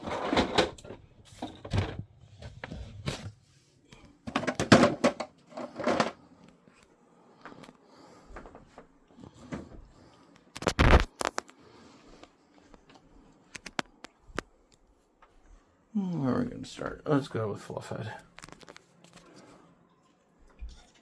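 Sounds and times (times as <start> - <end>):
objects knocking and clattering: 0.0 - 2.7, 4.2 - 6.2.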